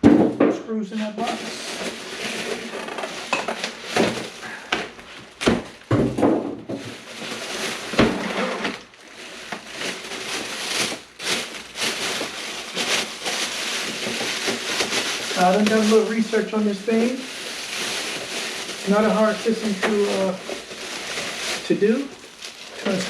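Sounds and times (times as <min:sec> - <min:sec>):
packing crinkling: 0:01.2 - 0:23.0
cardboard box being handled: 0:20.6 - 0:23.0.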